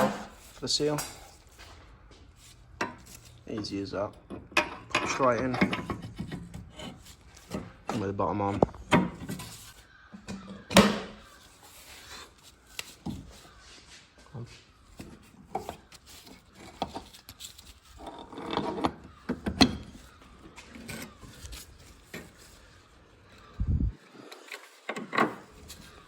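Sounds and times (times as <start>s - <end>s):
metal clunks and scraping: 0.0s - 1.7s, 2.8s - 11.5s, 15.0s - 22.6s, 24.3s - 26.0s.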